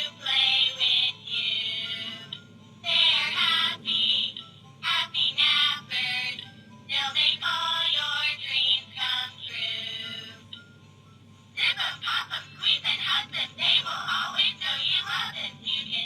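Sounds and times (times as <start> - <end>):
music: 0.0 - 16.0.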